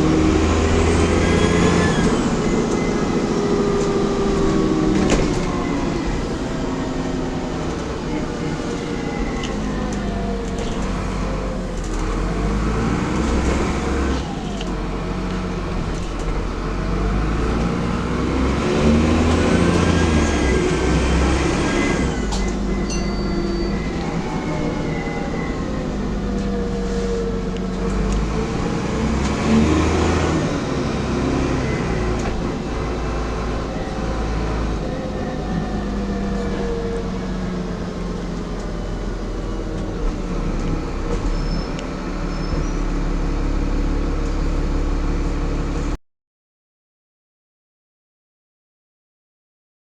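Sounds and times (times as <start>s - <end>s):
bus diesel engine accelerating: 0.0s - 46.0s
short high beep: 22.5s - 24.0s.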